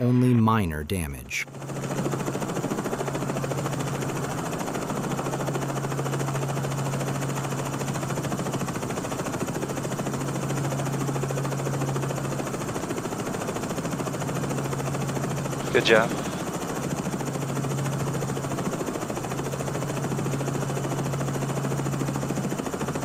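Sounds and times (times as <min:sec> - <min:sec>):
helicopter engine and rotor: 0:01.4 - 0:23.0.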